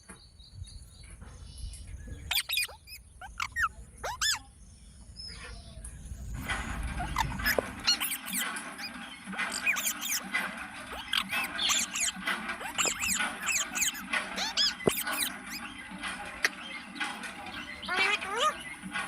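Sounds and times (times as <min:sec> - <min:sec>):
parrot chirping and squeaking: 0:02.2 - 0:04.5, 0:06.4 - 0:19.0.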